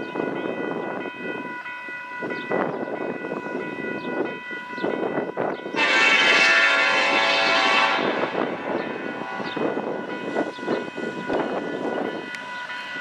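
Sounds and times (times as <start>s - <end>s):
freight train rumbling: 0.0s - 13.0s
locomotive horn: 5.7s - 10.1s.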